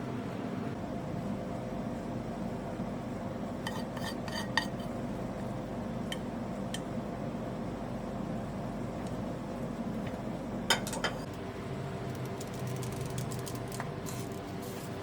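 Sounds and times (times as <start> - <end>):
steady background hum: 0.0 - 15.0
utensils clinking on ceramic dishes: 10.7 - 11.3.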